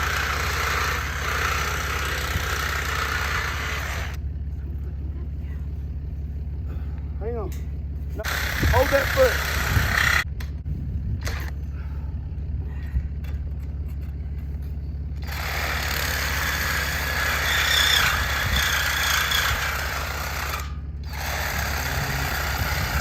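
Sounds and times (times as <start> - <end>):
reciprocating saw cutting metal: 0.0 - 4.2, 8.2 - 10.3, 15.2 - 23.0
vehicle engine idling: 0.0 - 23.0.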